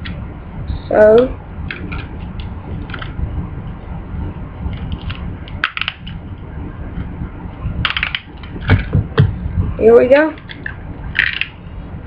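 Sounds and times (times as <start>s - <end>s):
low rumble of handling noise: 0.0s - 12.0s
plastic spinning tops clicking: 4.8s - 6.2s, 7.8s - 8.9s, 10.4s - 11.6s.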